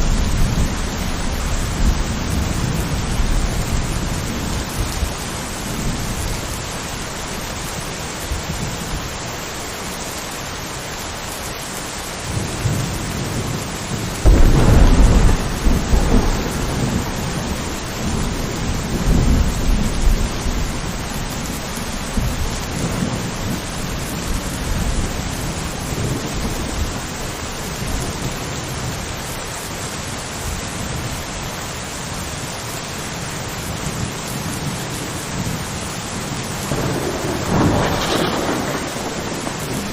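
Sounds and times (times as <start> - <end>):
thunder clap and rumble: 0.0 - 6.8, 12.3 - 29.0, 33.8 - 39.9
steady rain: 0.0 - 39.9.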